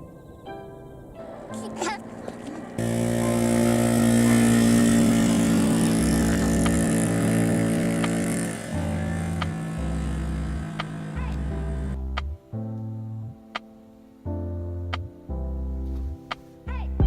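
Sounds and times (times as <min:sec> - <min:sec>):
small motorcycle engine running: 0:02.0 - 0:12.0.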